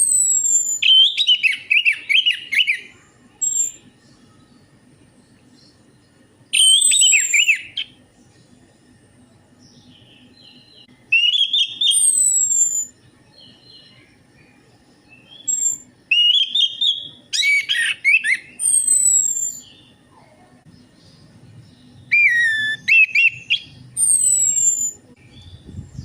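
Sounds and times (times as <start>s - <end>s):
thrush whistling song: 0.0s - 3.8s, 6.5s - 8.0s, 11.1s - 13.0s, 15.2s - 19.7s, 22.0s - 26.0s.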